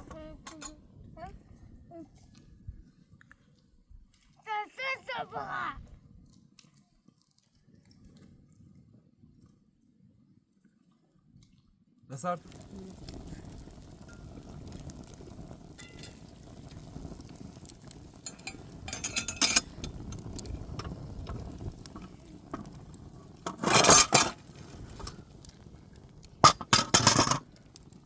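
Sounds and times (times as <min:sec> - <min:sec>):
kitchenware clattering: 0:18.3 - 0:19.8, 0:23.5 - 0:24.4, 0:26.4 - 0:27.4.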